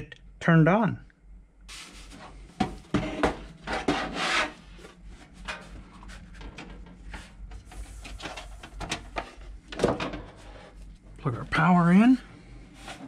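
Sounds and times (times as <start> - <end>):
rubbing and scraping of computer case: 1.7 - 10.9, 12.6 - 13.0.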